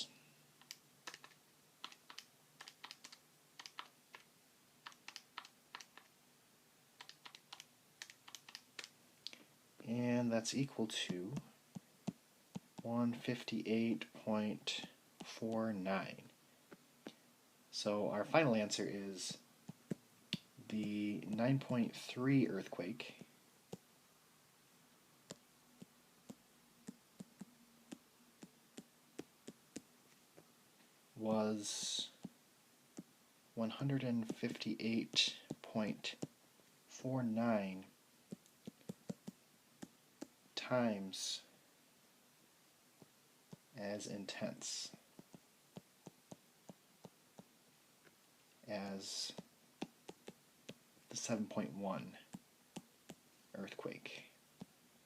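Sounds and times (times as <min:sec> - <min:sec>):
calculator keys clicking: 0:00.6 - 0:03.9
stylus tapping on tablet screen: 0:00.6 - 0:06.1, 0:07.0 - 0:08.9, 0:11.1 - 0:12.9, 0:25.2 - 0:30.5, 0:38.3 - 0:40.4, 0:45.2 - 0:47.5, 0:49.4 - 0:50.8, 0:52.3 - 0:53.2.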